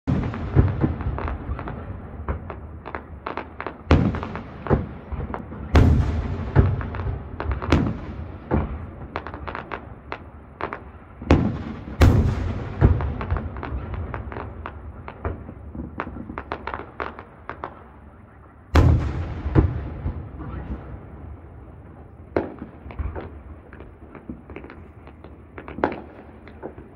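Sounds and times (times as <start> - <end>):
booming firework bursts: 0.1 - 18.0, 18.7 - 26.9
crackling firework pops: 22.3 - 26.9.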